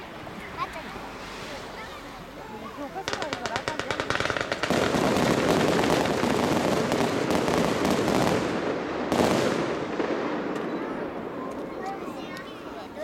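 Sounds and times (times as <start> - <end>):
fireworks crackling: 0.0 - 13.0
loud firework burst: 3.0 - 11.4.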